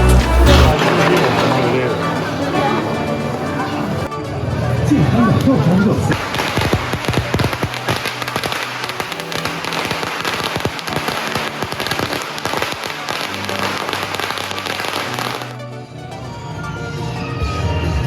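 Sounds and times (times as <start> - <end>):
music with low notes: 0.0 - 18.0
firecrackers crackling: 5.4 - 15.7.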